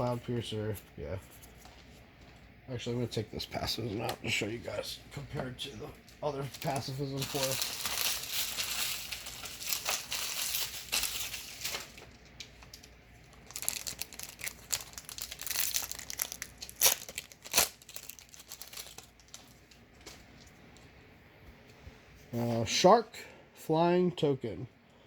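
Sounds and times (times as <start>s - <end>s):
foil wrapper crinkling and tearing: 6.3s - 20.5s.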